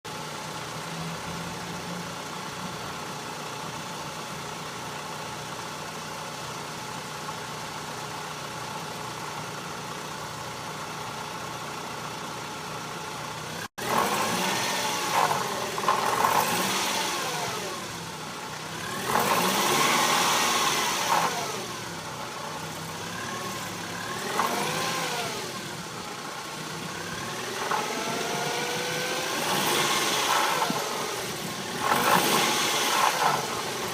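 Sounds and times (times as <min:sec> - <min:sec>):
car engine idling with a rattle: 0:00.1 - 0:33.9
car engine revving: 0:13.6 - 0:33.9.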